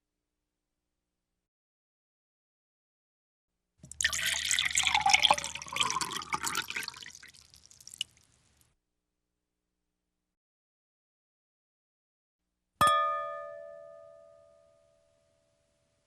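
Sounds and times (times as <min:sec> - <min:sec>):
water splashing and trickling: 0:03.8 - 0:08.6.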